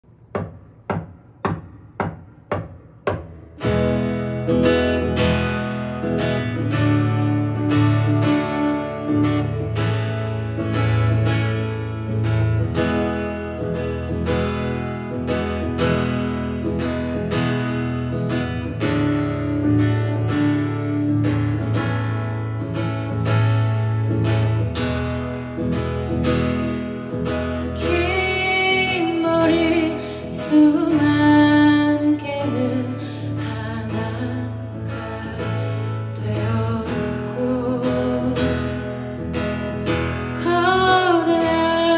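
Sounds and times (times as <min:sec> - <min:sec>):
acoustic guitar strumming: 0:00.1 - 0:41.9
person singing: 0:27.8 - 0:38.7, 0:40.3 - 0:41.9.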